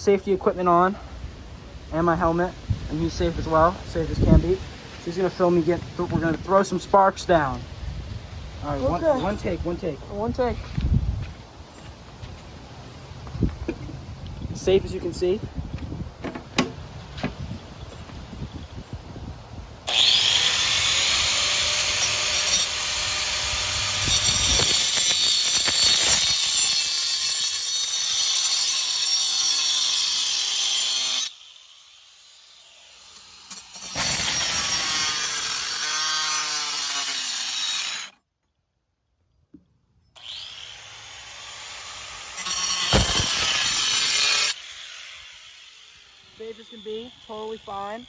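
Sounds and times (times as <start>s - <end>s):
angle grinder cutting: 19.9s - 38.1s, 40.2s - 48.0s.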